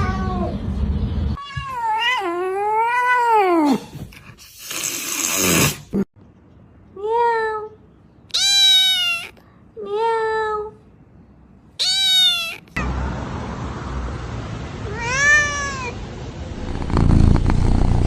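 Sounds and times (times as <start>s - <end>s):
cat meowing: 8.3s - 9.4s, 11.8s - 12.8s, 14.9s - 16.0s
breathy cat sound: 16.7s - 18.0s.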